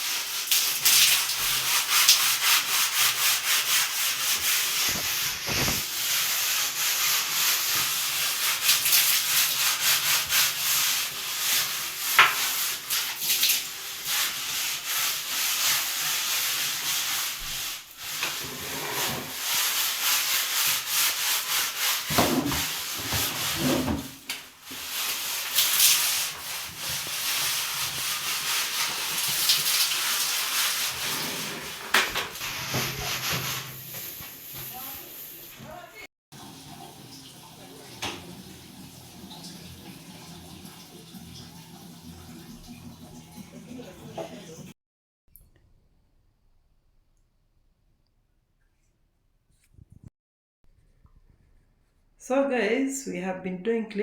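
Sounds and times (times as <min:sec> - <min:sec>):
stiff brush scrubbing: 0:01.4 - 0:35.9.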